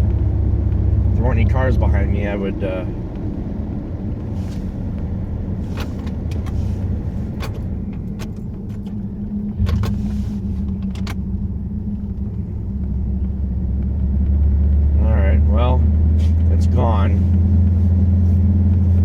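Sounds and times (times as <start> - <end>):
car engine and road noise: 0.0 - 19.0
sharp clicks and knocks: 7.3 - 14.4.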